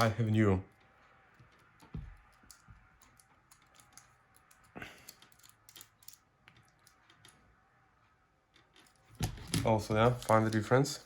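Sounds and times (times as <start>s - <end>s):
clicks of tiny parts handled: 1.4s - 7.4s.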